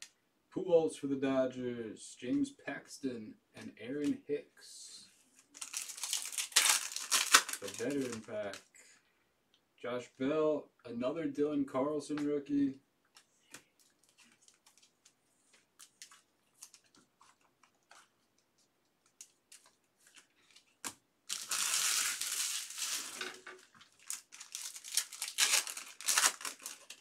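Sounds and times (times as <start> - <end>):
foil wrapper tearing and crinkling: 5.6 - 8.6, 19.1 - 27.0
cards ticking and sliding: 13.1 - 23.2.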